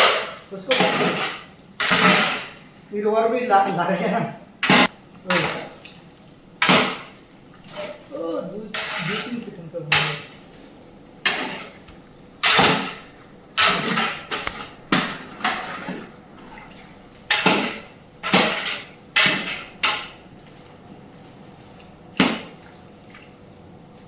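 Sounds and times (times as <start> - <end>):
pot knocks with splashy tail: 22.2 - 22.8.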